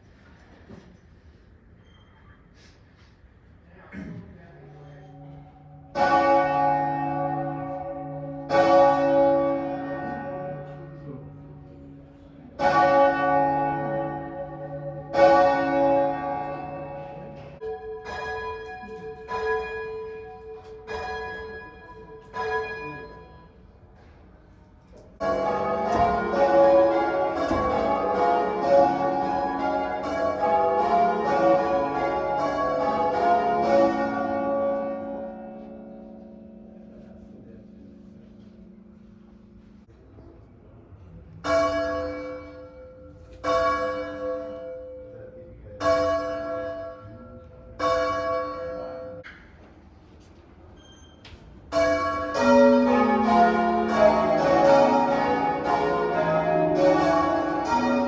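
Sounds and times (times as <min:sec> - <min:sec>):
change ringing of many bells: 0:04.8 - 0:24.1, 0:25.2 - 0:39.9, 0:41.4 - 0:49.3, 0:51.6 - 0:58.0
heavy bell striking: 0:12.6 - 0:23.6, 0:25.2 - 0:39.4, 0:51.7 - 0:58.0.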